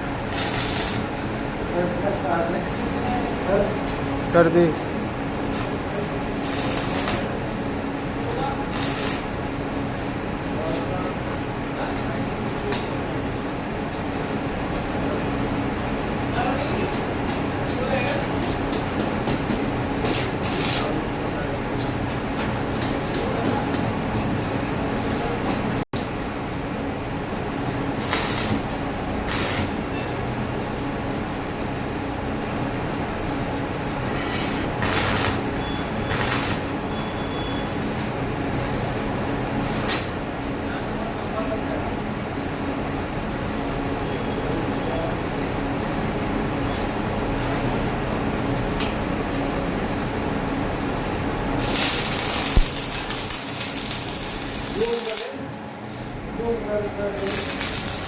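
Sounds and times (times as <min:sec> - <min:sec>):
workshop machinery humming: 0:00.0 - 0:58.0
loud hiss: 0:51.6 - 0:55.2, 0:57.2 - 0:58.0.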